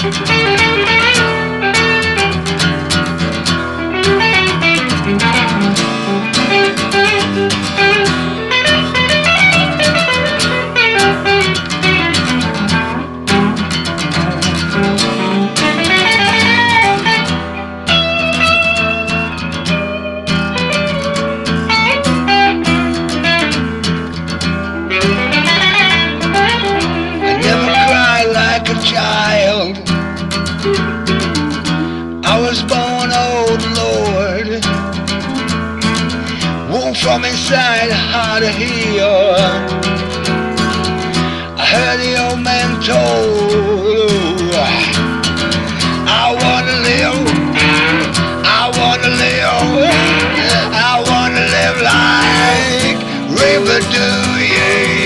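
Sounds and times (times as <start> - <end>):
bass: 0.0 - 55.0
guitar playing run of notes: 0.0 - 55.0.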